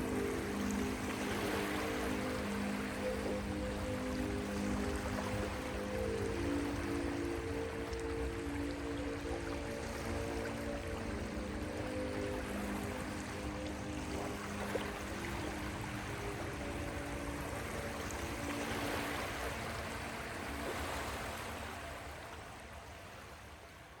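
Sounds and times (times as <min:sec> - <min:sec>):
ocean waves rushing: 0:00.0 - 0:23.4.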